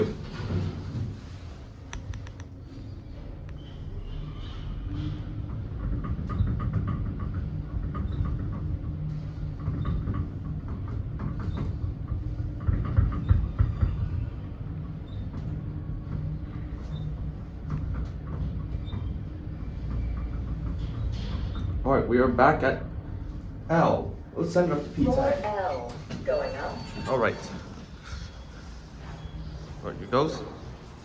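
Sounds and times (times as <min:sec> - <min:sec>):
elevator car rumbling: 0:00.0 - 0:31.0
light rattling and clicks: 0:01.8 - 0:02.6.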